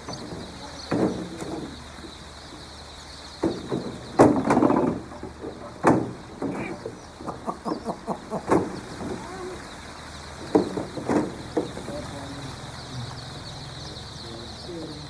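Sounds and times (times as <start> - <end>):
knocks and clatters: 0.0 - 2.7, 3.4 - 7.5, 8.4 - 9.3, 10.4 - 12.1
chickens clucking: 0.0 - 15.0.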